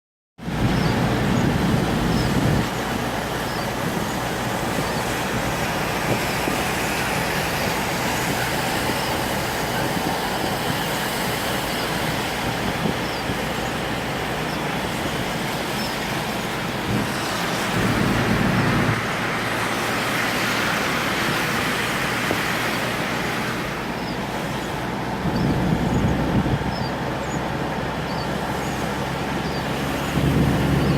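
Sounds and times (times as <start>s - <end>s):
deep traffic rumble: 0.4s - 30.9s
rain: 0.4s - 30.9s
tyres hissing on wet pavement: 0.5s - 30.9s.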